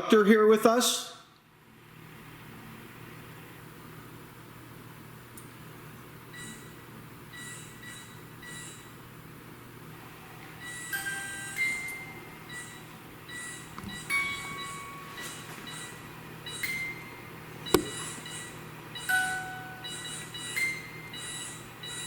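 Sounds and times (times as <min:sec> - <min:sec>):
sharp click: 0:17.8 - 0:18.1.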